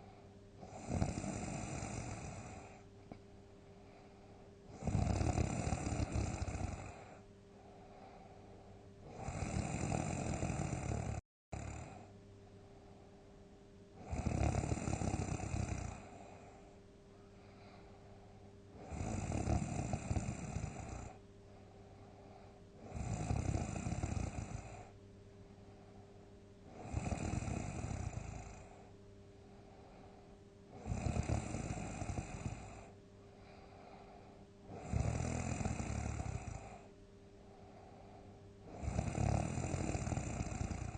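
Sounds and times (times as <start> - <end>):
quiet breaths: 0.0 - 40.9
person snoring loudly: 0.6 - 2.8, 4.7 - 7.2, 9.0 - 12.1, 14.0 - 16.5, 18.8 - 21.2, 22.8 - 24.9, 26.7 - 28.8, 30.7 - 32.9, 34.7 - 36.9, 38.7 - 40.9.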